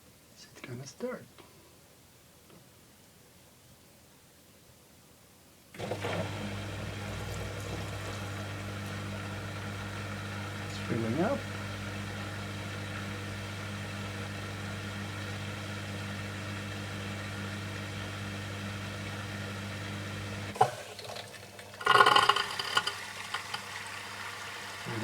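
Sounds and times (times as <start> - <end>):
dishwasher filling with water: 5.8 - 14.2, 20.5 - 25.0.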